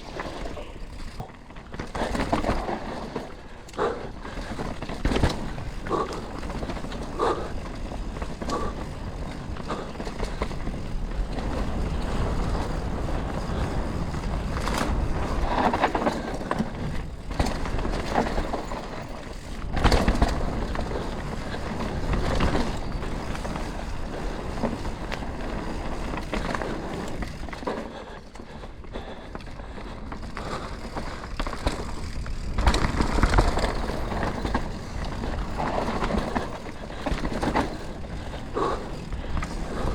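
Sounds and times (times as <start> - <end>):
bike rattling over bumps: 0.0 - 39.9
bike tyres crunching on dirt: 0.0 - 39.9
wind rumble on microphone: 0.0 - 39.9.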